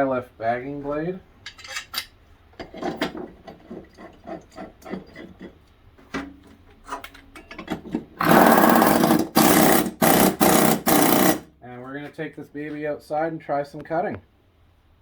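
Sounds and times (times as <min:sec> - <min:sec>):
metal parts clinking and knocking: 0:01.4 - 0:03.6
impact wrench hammering: 0:08.2 - 0:11.5.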